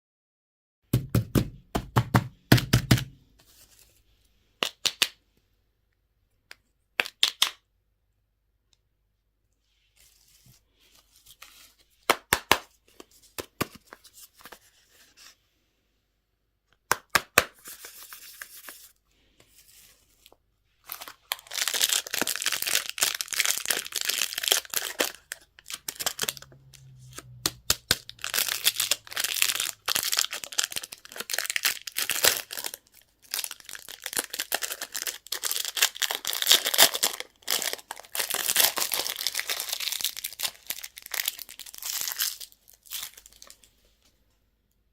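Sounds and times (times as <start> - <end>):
plastic wrapper crinkling and tearing: 20.2 - 43.7.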